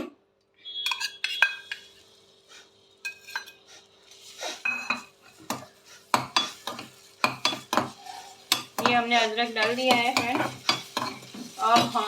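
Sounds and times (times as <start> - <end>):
metal spoon clinking on pan: 0.8 - 2.0, 3.0 - 3.6, 4.6 - 12.0.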